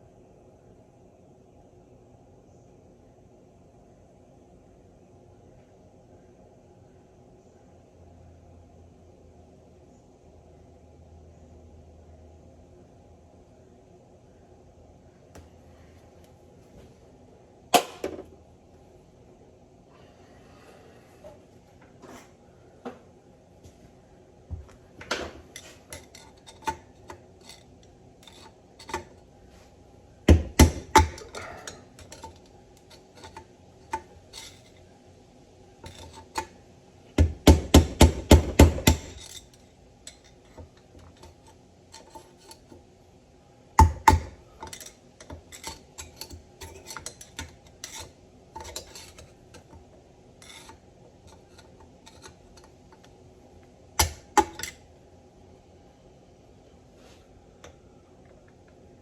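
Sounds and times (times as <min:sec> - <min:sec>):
metal parts and tools clinking: 0:30.9 - 0:34.8, 0:38.8 - 0:42.7, 0:44.0 - 0:49.7, 0:50.4 - 0:53.1, 0:54.0 - 0:54.8.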